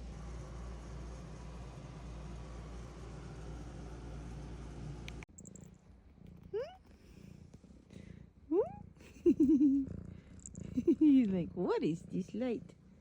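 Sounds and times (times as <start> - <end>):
cat purring: 5.4 - 13.0.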